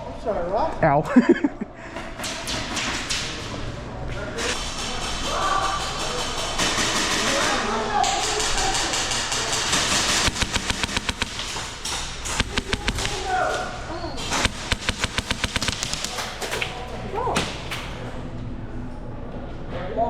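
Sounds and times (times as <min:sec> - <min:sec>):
airsoft guns firing bursts: 0:04.4 - 0:18.0.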